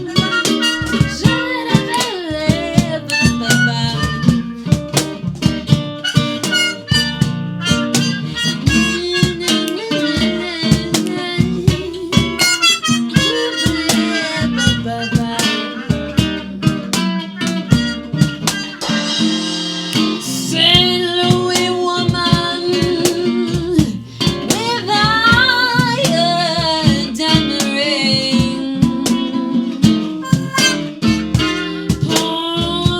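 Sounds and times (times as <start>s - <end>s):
acoustic guitar plucking: 0.0s - 32.9s
harmonica: 6.0s - 9.4s, 12.4s - 14.8s, 30.2s - 32.1s.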